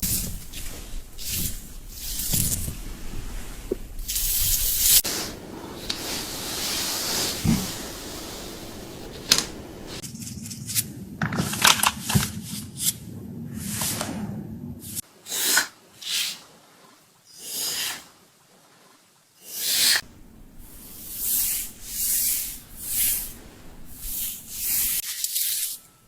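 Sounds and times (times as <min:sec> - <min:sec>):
short hissing bursts: 0:04.0 - 0:10.0, 0:19.4 - 0:25.8.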